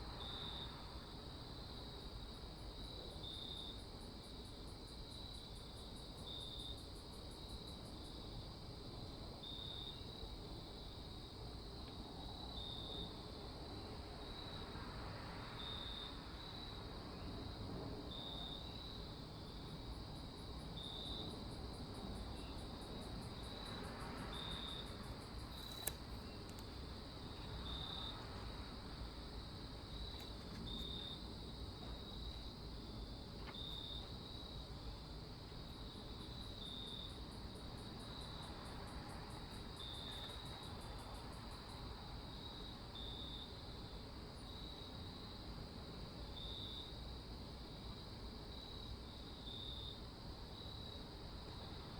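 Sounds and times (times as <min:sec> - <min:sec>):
crickets and insects chirping: 0:00.0 - 0:51.9
low steady hiss: 0:00.0 - 0:51.9
sharp click: 0:25.5 - 0:26.7.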